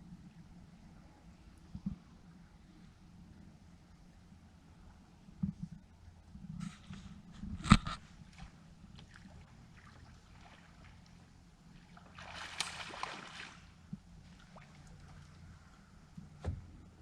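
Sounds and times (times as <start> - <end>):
water sloshing around a boat: 8.0 - 17.0
water splashing: 9.0 - 11.2, 11.8 - 15.3.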